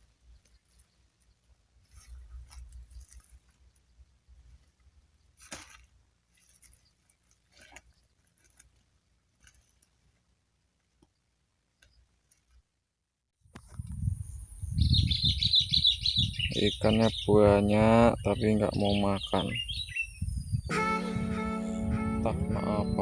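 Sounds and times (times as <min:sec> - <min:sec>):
faint soft rustles or taps: 0:00.2 - 0:11.2.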